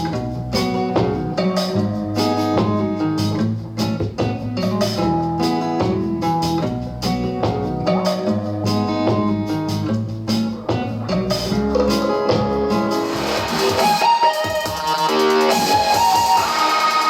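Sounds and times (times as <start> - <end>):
guitar and drum music: 0.0 - 17.0.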